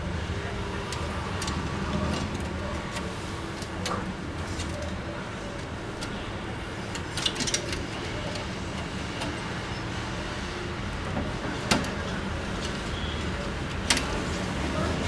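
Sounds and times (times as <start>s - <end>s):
printer parts clicking and knocking: 6.8s - 9.4s, 11.1s - 14.2s.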